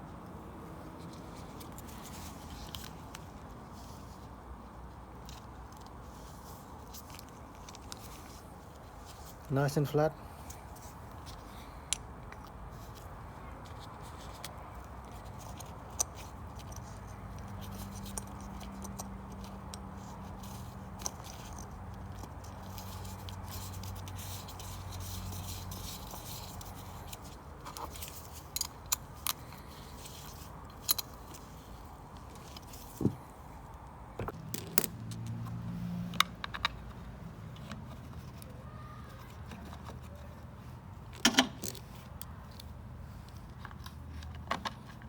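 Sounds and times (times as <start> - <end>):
small metal parts clicking: 14.2 - 31.6.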